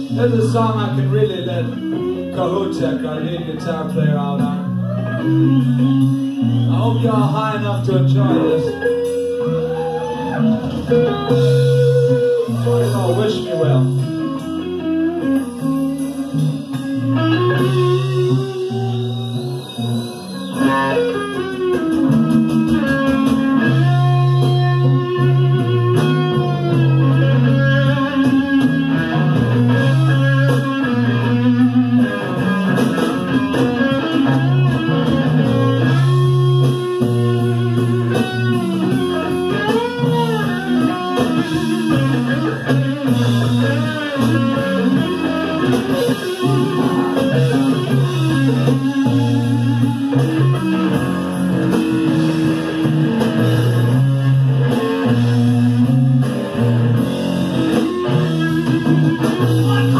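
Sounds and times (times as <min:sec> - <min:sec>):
bass guitar: 0:00.0 - 0:59.9
electric guitar solo: 0:00.0 - 0:59.9
rhythm guitar: 0:00.0 - 0:59.9.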